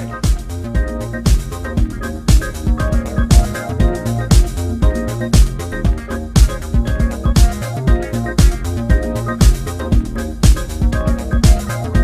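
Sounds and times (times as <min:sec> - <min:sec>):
electronic music: 0:00.0 - 0:12.0
held synth chords: 0:00.0 - 0:12.0
kick drum beat: 0:00.0 - 0:12.0.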